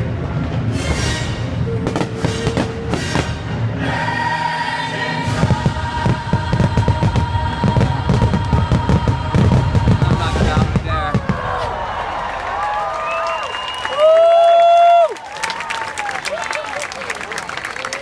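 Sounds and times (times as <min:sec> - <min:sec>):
choral music: 0:00.0 - 0:12.6.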